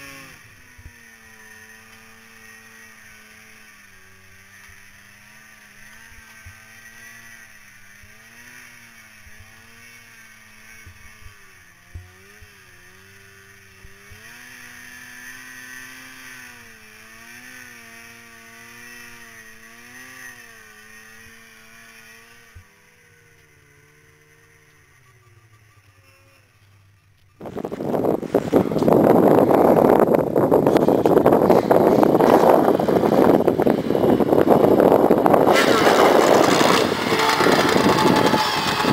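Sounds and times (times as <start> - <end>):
muffled snowmobile engine revving: 0.0 - 38.9
wind noise on microphone: 27.4 - 38.9.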